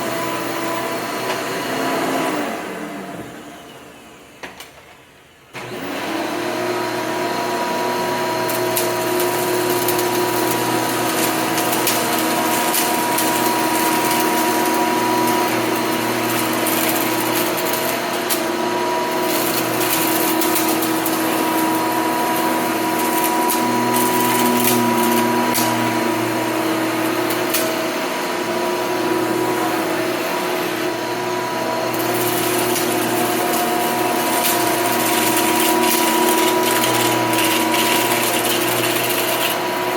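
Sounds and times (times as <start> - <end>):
vacuum cleaner running: 0.0 - 4.6, 5.2 - 39.9
debris crackling in vacuum: 7.7 - 28.3, 29.0 - 39.9.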